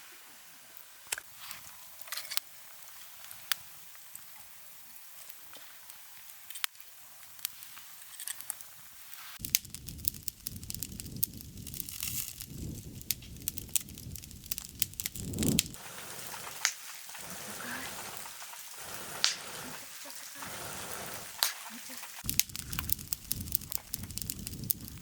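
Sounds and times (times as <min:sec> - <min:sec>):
campfire crackling and popping: 0:00.8 - 0:25.0
low rushing rustling noise: 0:09.6 - 0:19.2.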